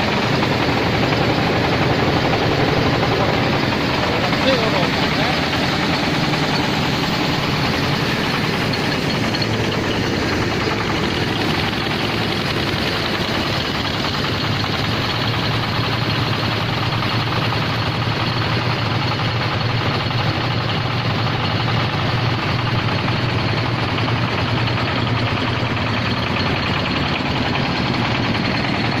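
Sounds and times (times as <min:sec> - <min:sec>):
diesel rice mill running: 0:00.0 - 0:29.0.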